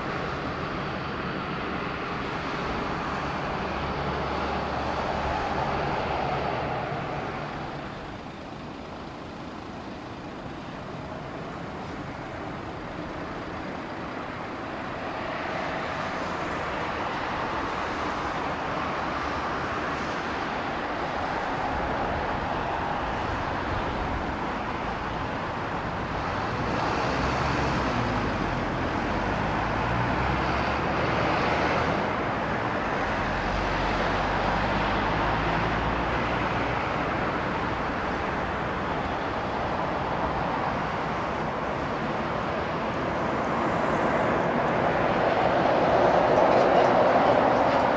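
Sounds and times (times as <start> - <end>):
jet airliner passing: 37.8 - 47.9.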